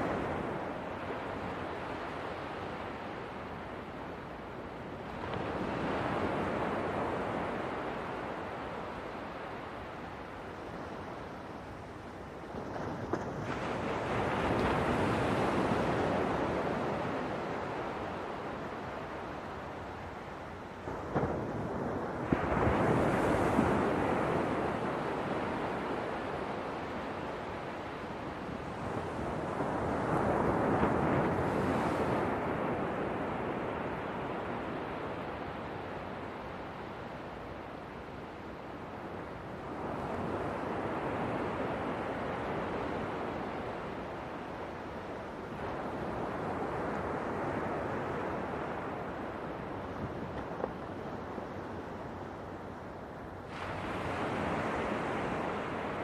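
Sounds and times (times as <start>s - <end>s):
light wind: 0.0s - 56.0s
ocean waves breaking: 12.5s - 56.0s.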